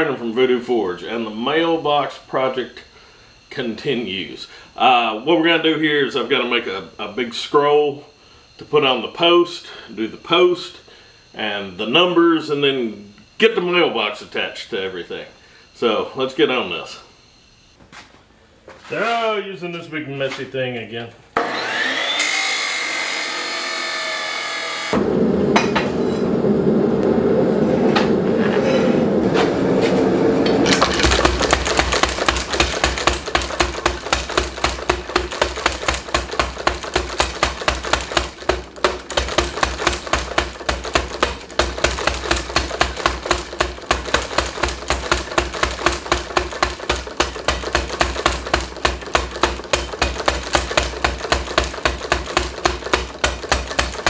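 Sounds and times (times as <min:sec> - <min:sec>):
low hum: 0:25.0 - 0:30.8.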